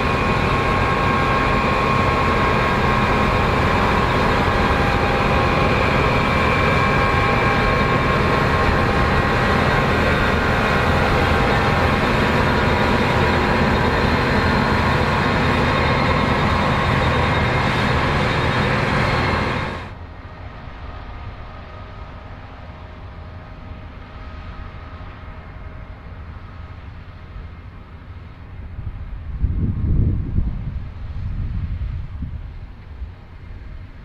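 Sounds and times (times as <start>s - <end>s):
steady machine whine: 0.0s - 31.7s
combine harvester running: 0.0s - 34.0s.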